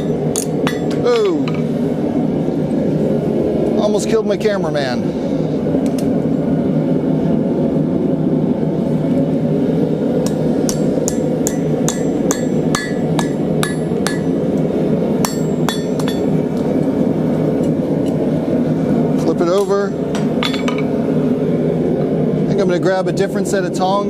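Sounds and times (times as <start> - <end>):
hammer striking hot steel: 0.0 - 1.7, 10.2 - 16.8, 19.5 - 21.0
forge roaring: 0.0 - 23.8.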